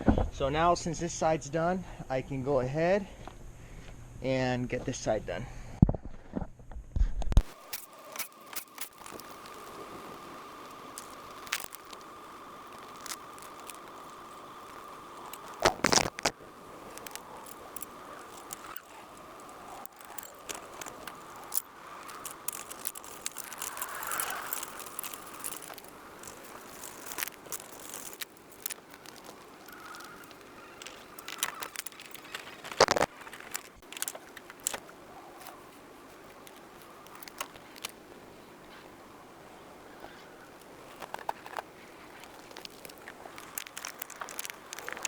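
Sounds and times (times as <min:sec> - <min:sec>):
metal tools clinking and clanking: 0:16.8 - 0:34.8.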